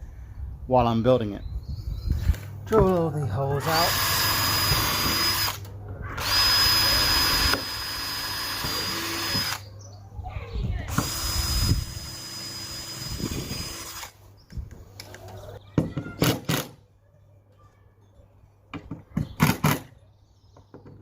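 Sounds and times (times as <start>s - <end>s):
power drill drilling into timber: 3.6s - 5.6s, 6.2s - 9.6s, 10.9s - 14.2s.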